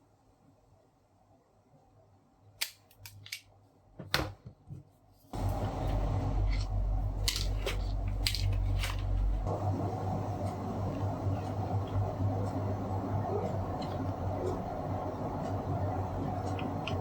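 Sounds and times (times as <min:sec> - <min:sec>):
steady hum with low drone: 0:05.4 - 0:17.0.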